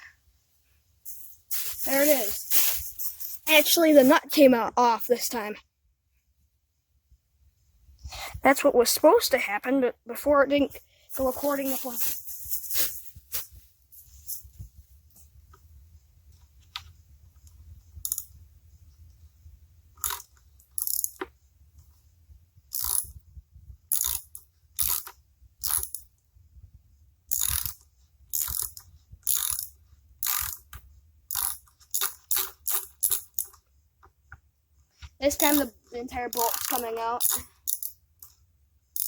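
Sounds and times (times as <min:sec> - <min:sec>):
ratchet wrench clicking: 0:18.0 - 0:18.3, 0:20.0 - 0:21.3, 0:22.7 - 0:23.2, 0:23.9 - 0:26.0, 0:27.3 - 0:33.6, 0:36.3 - 0:38.3.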